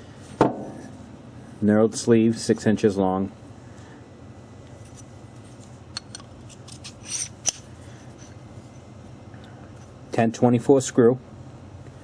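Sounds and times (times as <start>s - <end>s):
steady low hum: 0.0s - 12.0s
small metal parts clicking: 6.0s - 7.6s
metal scrape: 6.5s - 7.6s.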